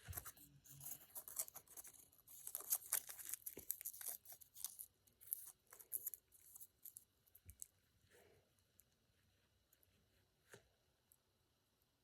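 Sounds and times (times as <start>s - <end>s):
aluminium foil crinkling: 0.0s - 7.1s.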